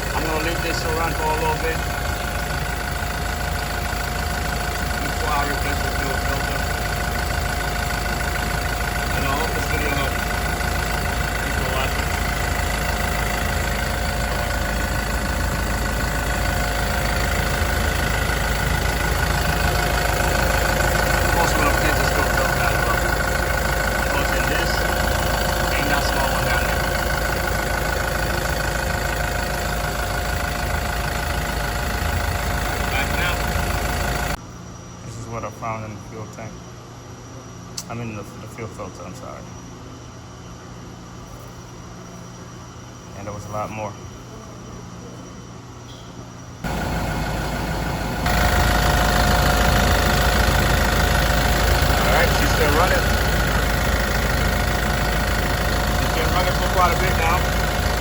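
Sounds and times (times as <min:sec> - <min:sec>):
diesel forklift engine idling: 0:00.0 - 0:34.4, 0:46.6 - 0:58.0.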